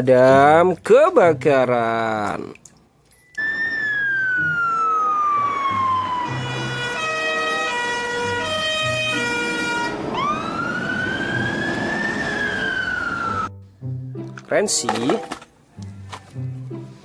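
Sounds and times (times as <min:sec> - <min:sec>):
fire engine siren wailing: 0:03.4 - 0:13.6.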